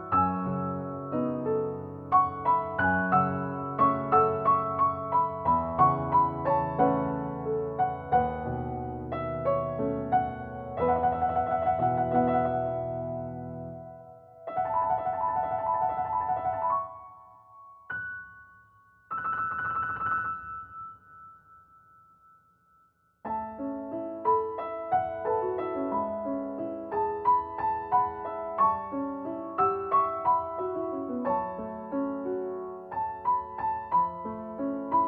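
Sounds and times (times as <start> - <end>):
piano music: 0.0 - 22.4, 23.2 - 35.0.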